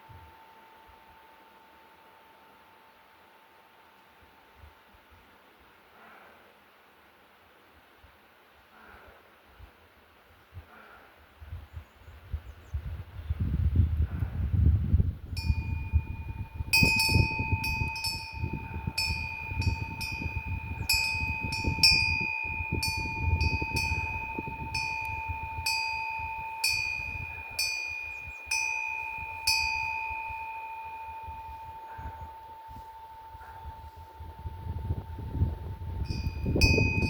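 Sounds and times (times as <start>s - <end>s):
metal wind bell ringing: 0.0s - 2.9s, 15.4s - 37.0s.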